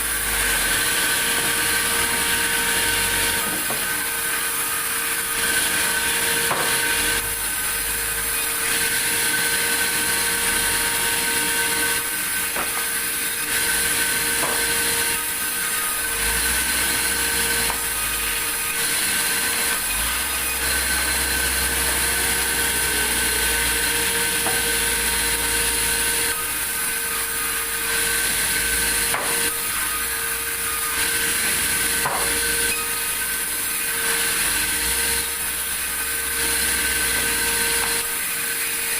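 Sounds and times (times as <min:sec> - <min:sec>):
sawmill saw cutting a log: 0:00.0 - 0:38.9
sharp knocks: 0:32.0 - 0:32.4.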